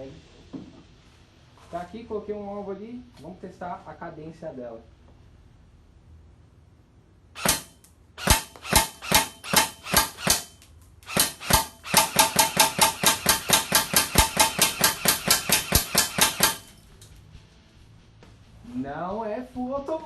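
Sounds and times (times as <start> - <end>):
airsoft rifle shots: 7.4 - 16.8.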